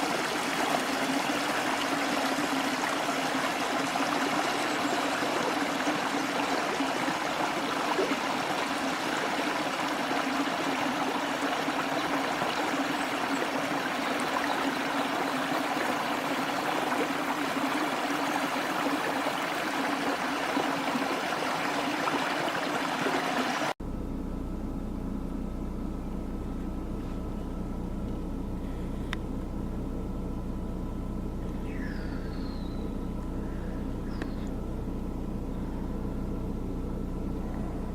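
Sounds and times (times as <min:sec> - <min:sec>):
small waterfall splashing: 0:00.0 - 0:23.8
low steady rumble: 0:23.8 - 0:37.9.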